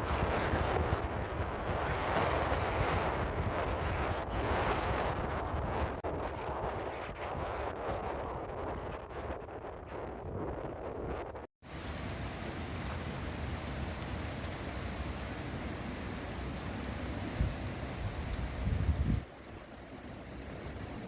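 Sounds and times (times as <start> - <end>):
wind rumbling on microphone: 0.0 - 21.0
rain falling: 11.6 - 21.0.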